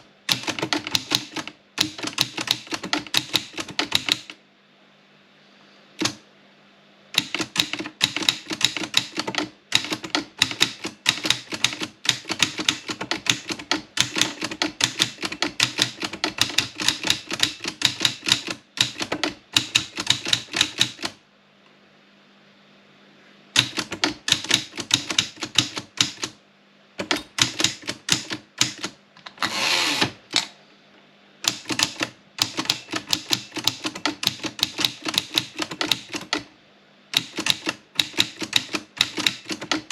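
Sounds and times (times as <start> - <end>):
typewriter key strikes: 0.3 - 4.4, 7.2 - 21.2, 23.6 - 26.4, 27.0 - 29.0, 31.4 - 36.4, 37.2 - 39.9.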